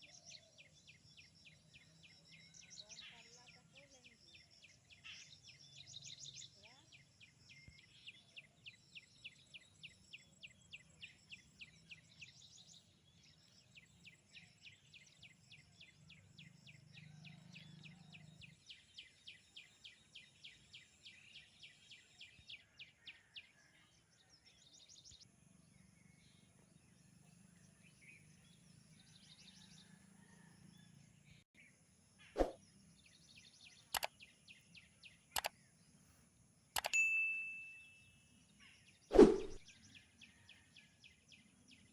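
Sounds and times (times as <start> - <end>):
bird chirping: 24.5 - 41.9
sharp clicks: 36.8 - 37.0.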